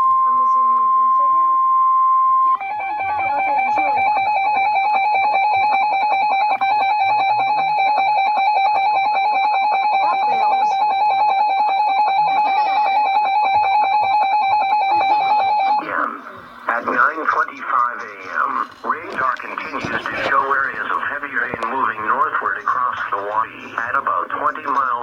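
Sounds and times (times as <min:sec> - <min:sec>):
electronic alarm tone: 0:00.0 - 0:16.1.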